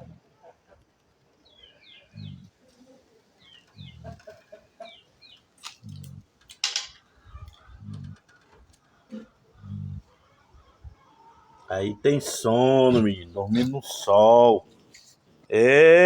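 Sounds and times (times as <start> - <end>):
birds chirping: 0.0 - 16.0
dog snoring: 9.2 - 10.1.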